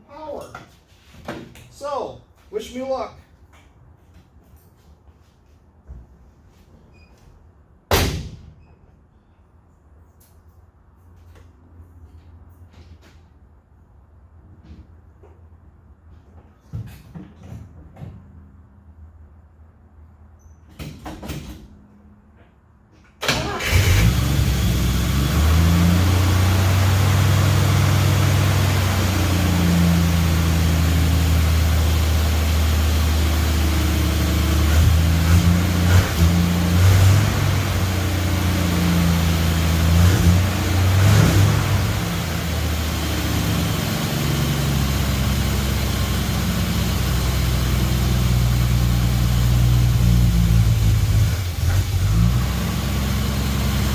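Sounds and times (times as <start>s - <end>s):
pickup engine starting and running: 23.2s - 53.9s.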